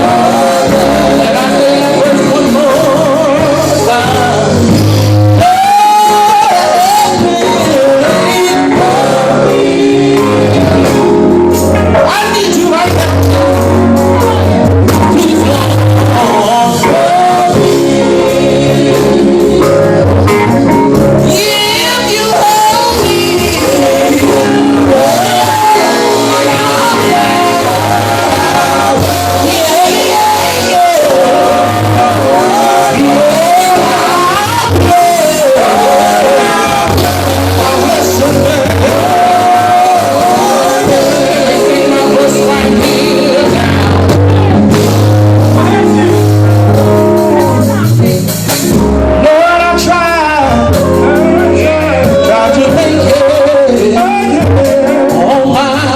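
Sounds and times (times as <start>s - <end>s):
loud sustained lead voice: 0.0s - 48.1s
band playing with bass: 0.0s - 55.9s
gospel group singing: 0.0s - 55.9s.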